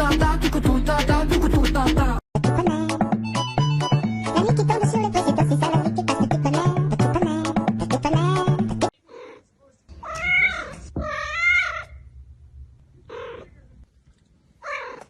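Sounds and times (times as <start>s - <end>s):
cat meowing: 9.0s - 12.0s, 13.0s - 13.6s, 14.6s - 15.0s.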